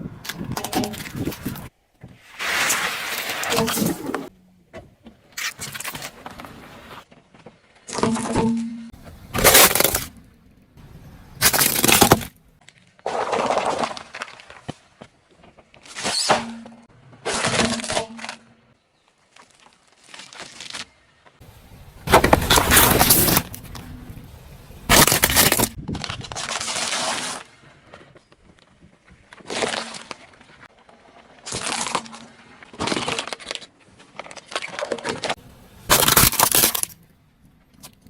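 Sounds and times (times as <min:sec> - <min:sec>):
car tyre crushing crunchy objects: 0:00.0 - 0:04.3, 0:05.3 - 0:18.5, 0:19.4 - 0:28.2, 0:29.1 - 0:38.0.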